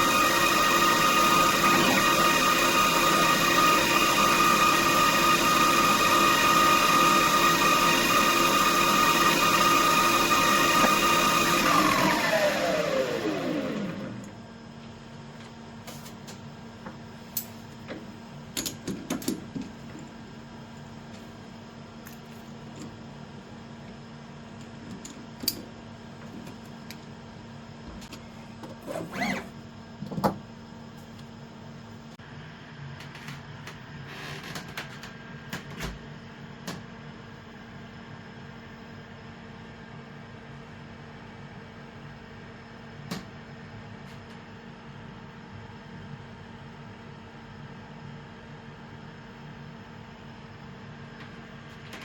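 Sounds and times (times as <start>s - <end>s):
spindle motor whining: 0.0s - 14.4s.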